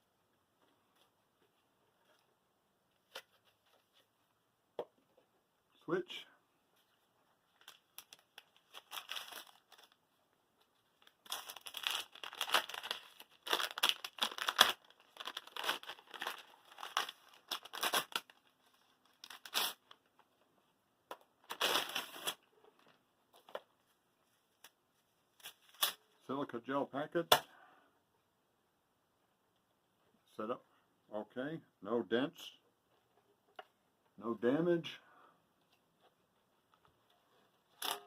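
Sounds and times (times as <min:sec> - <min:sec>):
plastic packaging crinkling and tearing: 0:07.5 - 0:10.0, 0:10.7 - 0:20.0, 0:21.4 - 0:23.0.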